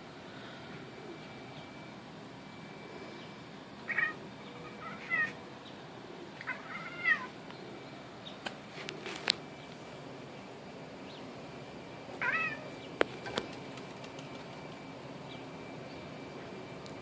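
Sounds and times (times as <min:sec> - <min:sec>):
cat meowing: 0:03.9 - 0:05.4, 0:06.4 - 0:07.3, 0:12.2 - 0:12.6.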